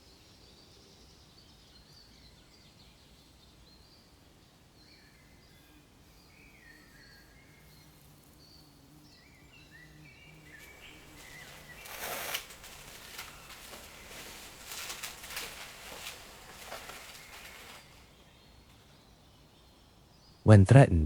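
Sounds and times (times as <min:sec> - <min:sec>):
birds chirping: 0:04.8 - 0:21.0.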